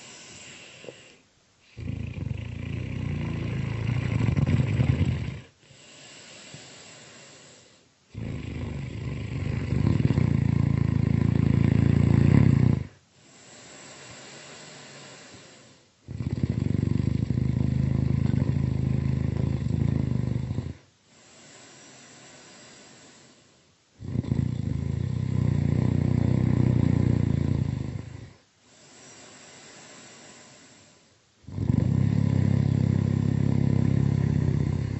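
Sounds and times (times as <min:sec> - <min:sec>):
breathy exhales: 0:00.0 - 0:01.2, 0:05.6 - 0:07.9
loud low snoring: 0:00.0 - 0:23.4, 0:24.0 - 0:34.9.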